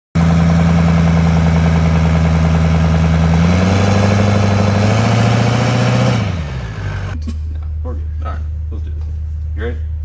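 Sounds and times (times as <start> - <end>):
diesel truck engine idling: 0.2 - 7.2.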